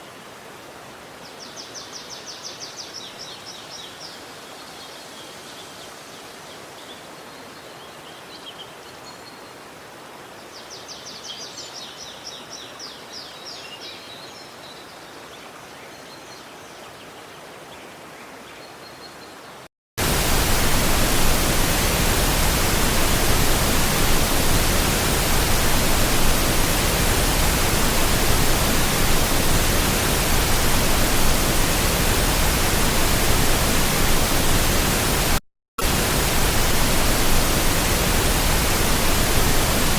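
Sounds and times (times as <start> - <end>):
loud steady rushing noise: 20.0 - 39.9.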